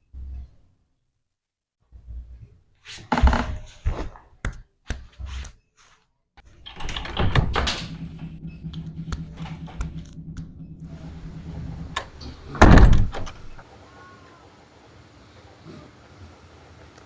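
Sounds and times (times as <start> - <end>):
door rattling: 6.4 - 13.6
door shutting with heavy thud: 6.4 - 13.6
steady low hum: 6.5 - 13.6.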